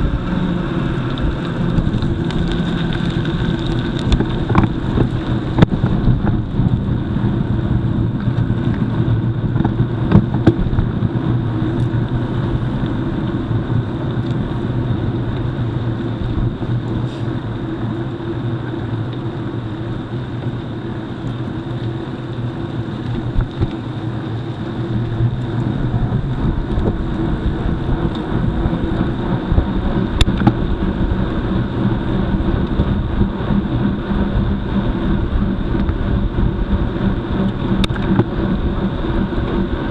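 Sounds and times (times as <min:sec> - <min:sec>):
bike tyres rumbling on gravel: 0:00.0 - 0:39.9
bike clicks and rattles: 0:00.9 - 0:18.0, 0:20.3 - 0:31.0, 0:37.3 - 0:39.9.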